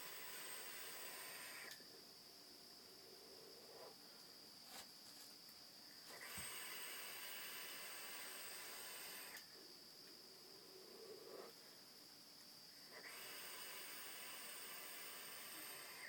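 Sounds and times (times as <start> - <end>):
vape coil sizzling hiss: 0.0 - 1.8, 6.1 - 9.5, 13.0 - 16.0.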